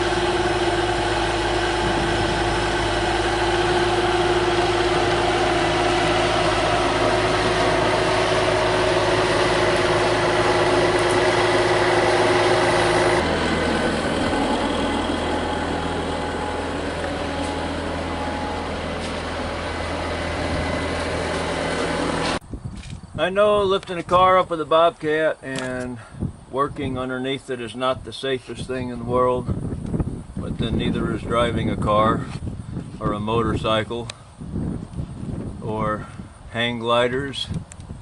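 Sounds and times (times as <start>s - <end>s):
loader engine idling: 0.0s - 22.4s.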